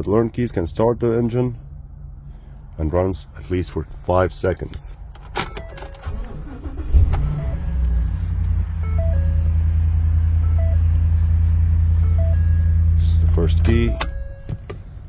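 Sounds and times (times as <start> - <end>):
engine cranking and idling: 5.1 - 15.0.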